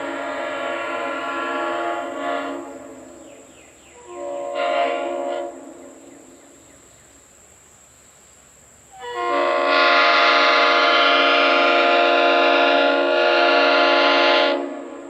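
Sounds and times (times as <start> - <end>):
train horn blasts: 0.0 - 3.4, 4.0 - 6.1, 9.0 - 15.0.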